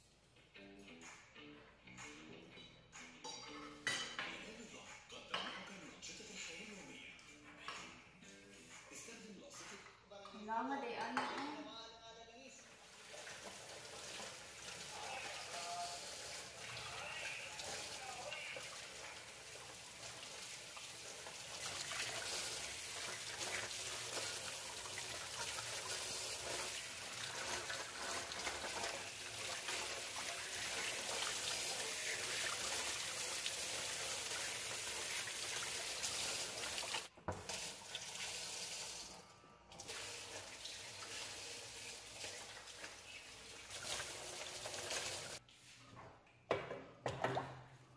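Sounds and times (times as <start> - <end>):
tap water running into sink: 12.8 - 45.4.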